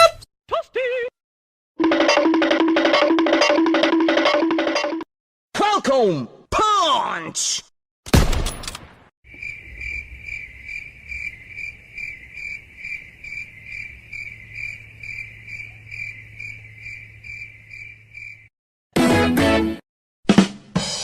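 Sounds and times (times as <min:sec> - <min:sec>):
crickets chirping: 0:09.3 - 0:18.5.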